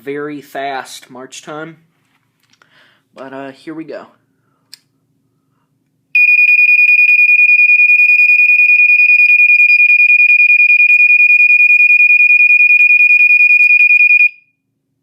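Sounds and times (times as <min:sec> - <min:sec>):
smoke alarm horn: 0:06.2 - 0:14.6.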